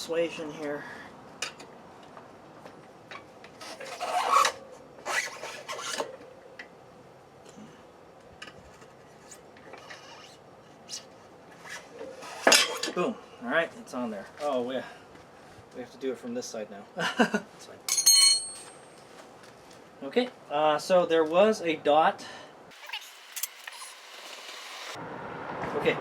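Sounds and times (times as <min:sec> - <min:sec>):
tire bead scraping over rim: 0:03.6 - 0:06.2, 0:08.8 - 0:13.0.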